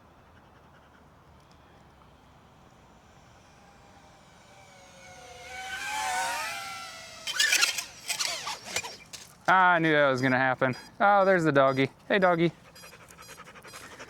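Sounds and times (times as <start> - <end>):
drone propellers whining: 1.1 - 11.6
drone crashing into tree: 3.5 - 9.5.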